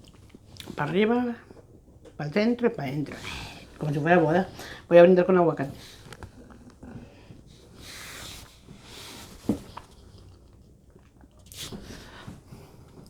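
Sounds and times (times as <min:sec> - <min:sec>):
quiet chewing: 0:00.0 - 0:02.2, 0:05.6 - 0:07.8, 0:09.7 - 0:13.0
soft breathy hisses: 0:03.1 - 0:04.9, 0:05.7 - 0:09.8.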